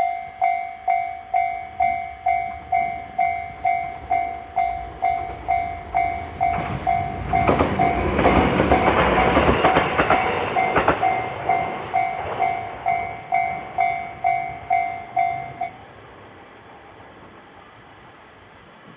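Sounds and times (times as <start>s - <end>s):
level crossing alarm bell ringing: 0.0s - 15.8s
train wheels clacking over rail joints: 6.4s - 13.7s.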